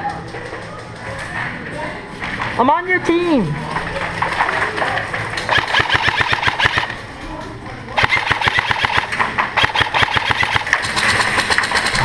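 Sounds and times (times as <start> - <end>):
airsoft guns firing: 5.4 - 7.0, 8.0 - 12.0.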